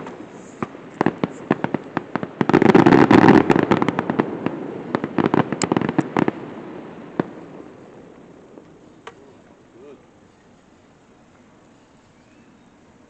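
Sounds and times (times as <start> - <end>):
fireworks cracking and banging: 0.0 - 9.8.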